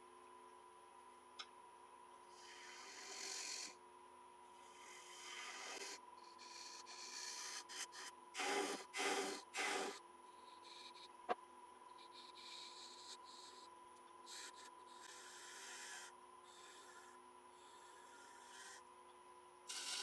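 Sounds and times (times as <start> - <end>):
lathe tool scraping wood: 16.6 - 18.8.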